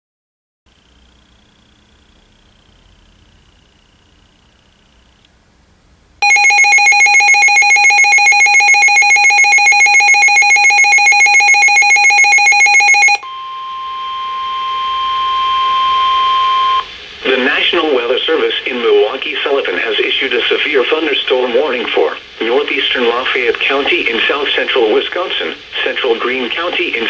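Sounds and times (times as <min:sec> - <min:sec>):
pulsing ringing alarm: 0:06.2 - 0:16.9
steady warning alarm tone: 0:06.2 - 0:18.4.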